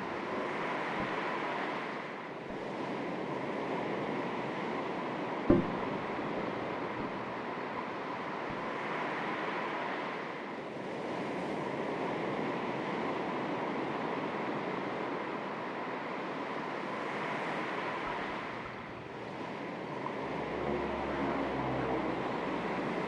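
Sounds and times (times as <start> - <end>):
small waves lapping on shore: 0.0 - 23.0
low hum: 5.5 - 8.9.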